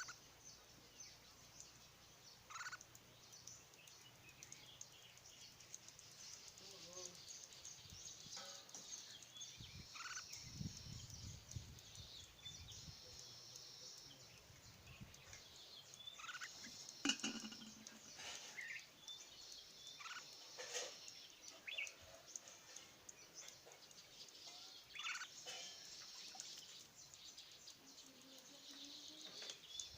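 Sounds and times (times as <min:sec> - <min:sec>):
high-pitched chirping: 0:00.0 - 0:00.2, 0:02.5 - 0:02.9, 0:09.8 - 0:13.3, 0:16.1 - 0:18.0
short sharp bird calls: 0:02.5 - 0:02.8.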